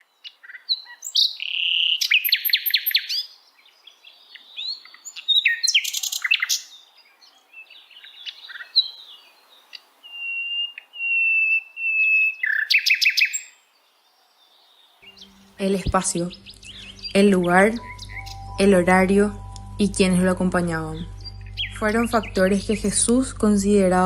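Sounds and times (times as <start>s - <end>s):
whistled bird notes: 10.1s - 13.4s, 15.0s - 18.6s
birds chirping and trilling: 14.4s - 24.0s.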